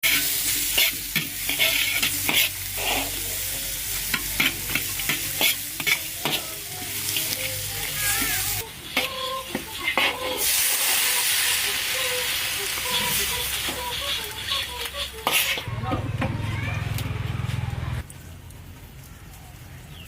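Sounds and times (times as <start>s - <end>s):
utensil stirring and scraping: 0.0s - 3.3s, 4.1s - 6.5s, 12.8s - 15.7s
food sizzling in a pan: 0.0s - 15.7s.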